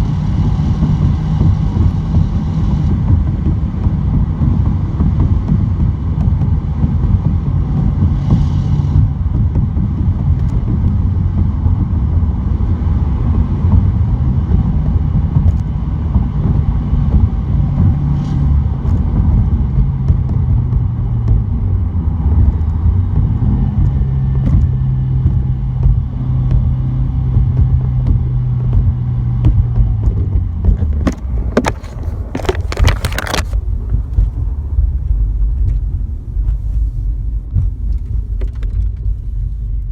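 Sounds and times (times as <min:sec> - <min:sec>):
muffled car engine driving: 0:00.0 - 0:39.9
road rumble: 0:00.0 - 0:39.9.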